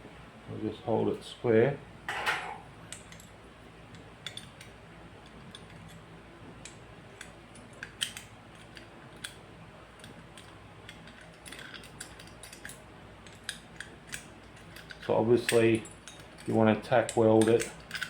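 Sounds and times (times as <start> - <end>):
low steady hum: 0.0 - 18.0
light metallic clicks and taps: 10.0 - 18.0.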